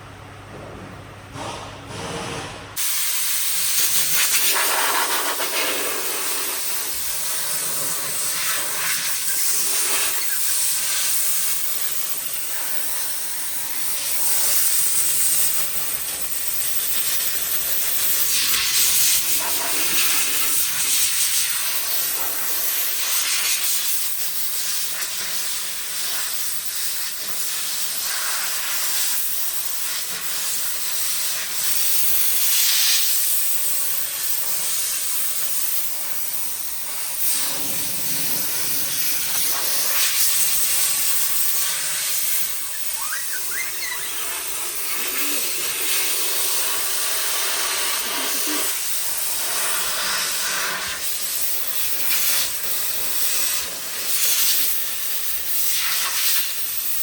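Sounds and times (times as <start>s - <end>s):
paint spray gun hissing: 2.8s - 57.0s.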